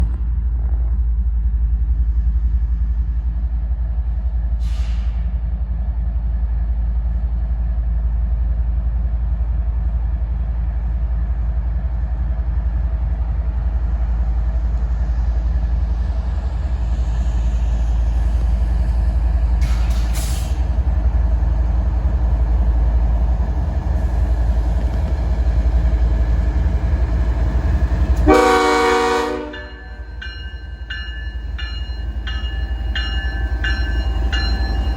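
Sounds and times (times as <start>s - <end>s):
diesel locomotives rumbling: 0.0s - 34.9s
locomotive horn blast: 28.2s - 30.0s.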